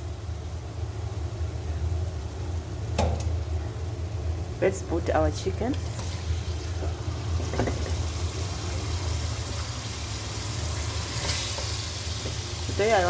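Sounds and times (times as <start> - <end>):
steady low hum: 0.0 - 9.5
chicken sizzling in a pot: 5.6 - 13.0.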